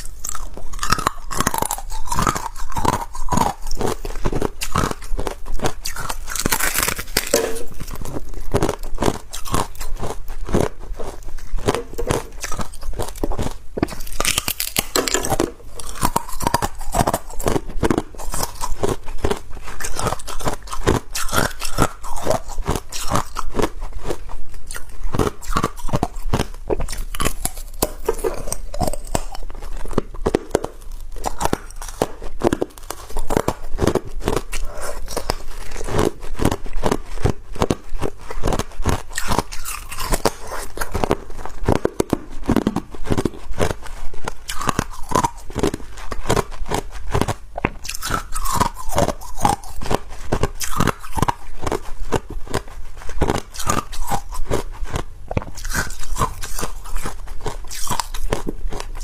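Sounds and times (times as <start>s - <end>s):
ice being chewed: 0.0s - 59.0s.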